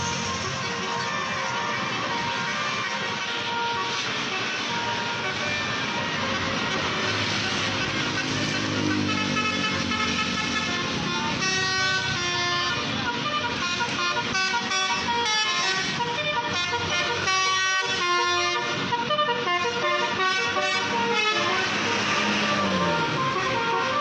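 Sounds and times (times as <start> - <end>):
multi-tone bus air horn tune: 0.0 - 24.0.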